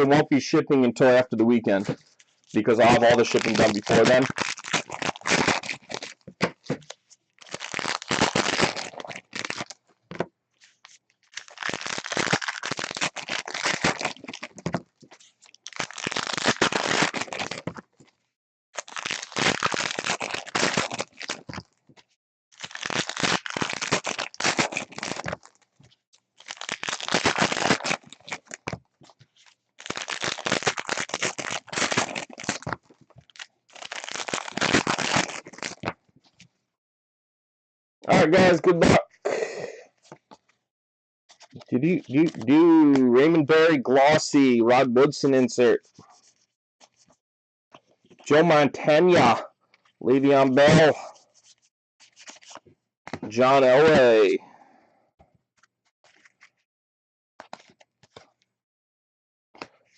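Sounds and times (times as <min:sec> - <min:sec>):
foil wrappers crinkling and tearing: 0:01.8 - 0:09.8, 0:10.6 - 0:18.1, 0:18.8 - 0:21.8, 0:22.5 - 0:36.0, 0:41.3 - 0:42.5, 0:50.7 - 0:52.6.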